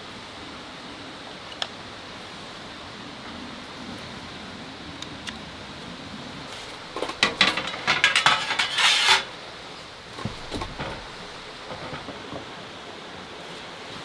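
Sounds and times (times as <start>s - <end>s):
metal items clinking and clattering: 6.5s - 12.4s.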